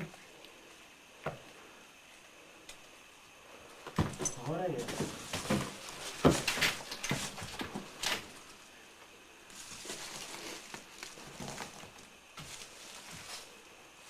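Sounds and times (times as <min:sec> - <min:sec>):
faint rustling: 0:09.4 - 0:14.0.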